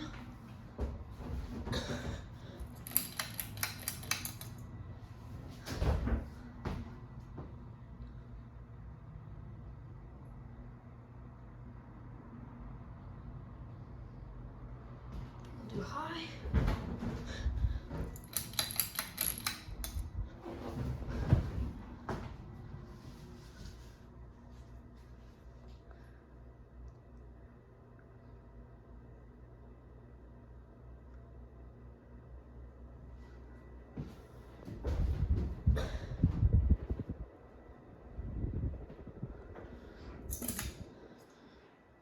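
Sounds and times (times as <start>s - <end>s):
ceiling fan motor hum: 0.0s - 42.0s
pull chain rattling on metal: 2.7s - 4.6s, 18.1s - 20.0s.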